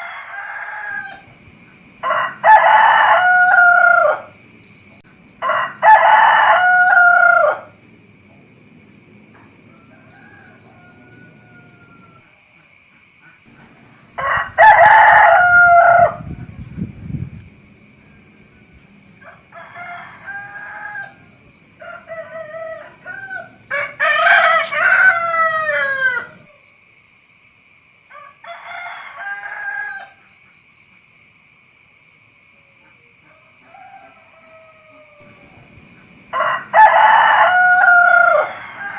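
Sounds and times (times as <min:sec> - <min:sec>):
rooster crowing: 0:00.0 - 0:01.4, 0:02.0 - 0:04.4, 0:05.3 - 0:07.8, 0:09.3 - 0:12.5, 0:13.9 - 0:16.4, 0:19.1 - 0:26.7, 0:28.1 - 0:30.4, 0:33.2 - 0:38.9.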